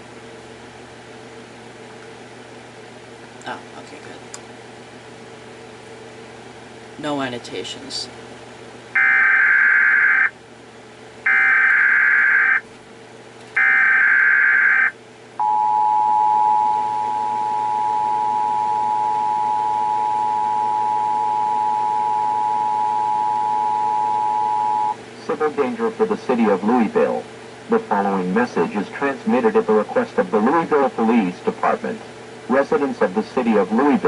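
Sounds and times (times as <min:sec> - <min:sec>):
harsh digital data bursts: 0:09.0 - 0:10.3, 0:11.3 - 0:12.6, 0:13.6 - 0:14.9
two-tone attention signal: 0:11.3 - 0:12.6, 0:13.6 - 0:25.0.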